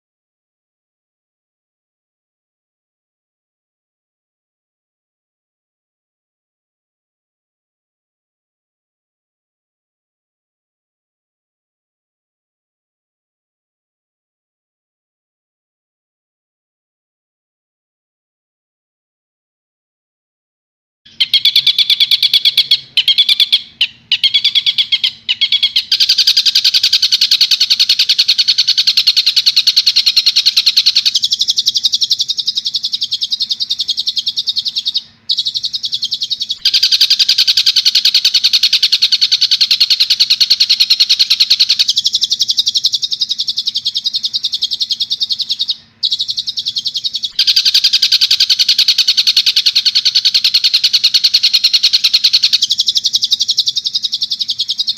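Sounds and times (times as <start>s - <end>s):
bird chattering trill: 21.1s - 54.9s
faint steady hum: 21.1s - 54.9s.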